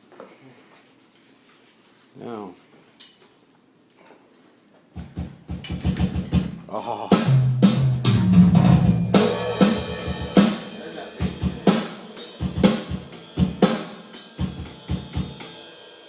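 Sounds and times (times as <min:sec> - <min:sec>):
electronic drum kit hits: 0:05.0 - 0:06.6, 0:07.2 - 0:15.5
ringing low drum: 0:07.3 - 0:11.8.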